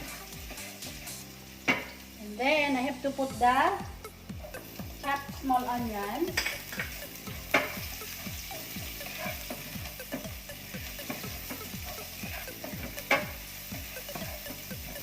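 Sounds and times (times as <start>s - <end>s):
onions sizzling in hot oil: 0.0s - 15.0s
utensil clacking against pan: 6.3s - 7.8s, 12.6s - 13.4s.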